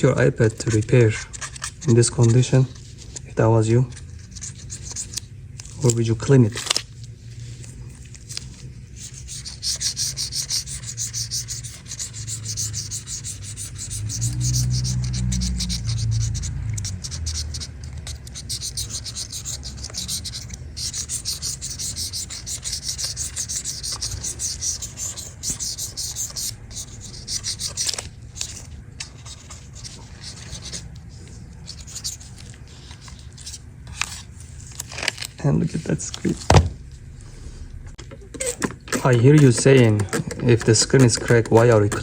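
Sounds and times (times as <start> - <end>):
scrubbing on a casing: 7.5 - 34.9, 38.9 - 42.0
low hum: 22.3 - 38.2.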